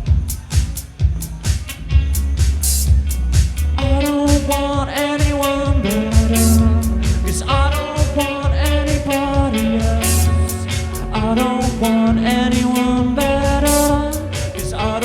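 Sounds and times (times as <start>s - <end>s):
drum-kit beat: 0.0s - 15.0s
live band playing: 4.0s - 15.0s.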